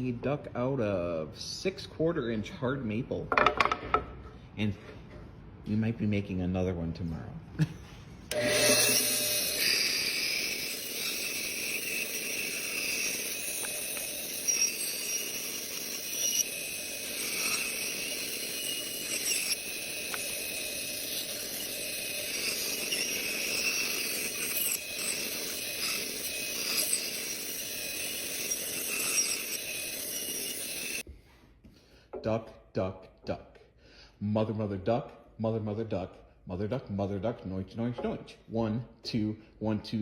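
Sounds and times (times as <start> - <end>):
bandsaw cutting wood: 8.3 - 31.0.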